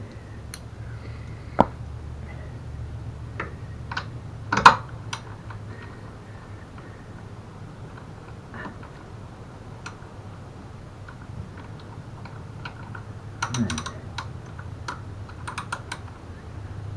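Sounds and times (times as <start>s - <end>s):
steady low hum: 0.0s - 16.9s
hand tools clicking and knocking: 3.4s - 16.3s.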